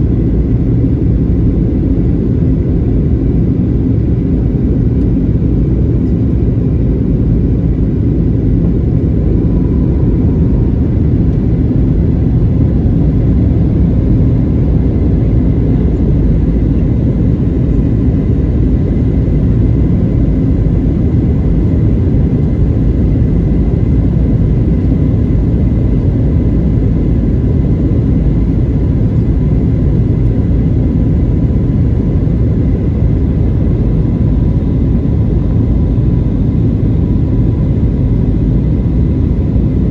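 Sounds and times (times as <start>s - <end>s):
airliner cabin engine rumble: 0.0s - 39.9s.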